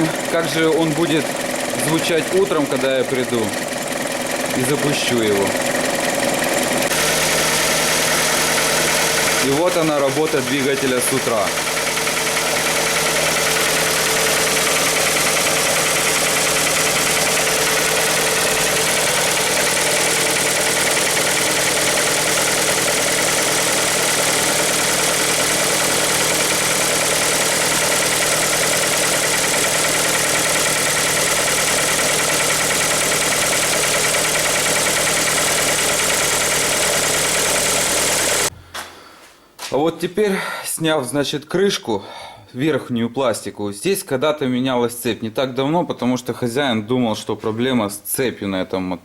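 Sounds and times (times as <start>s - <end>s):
petrol engine idling: 0.0s - 38.5s.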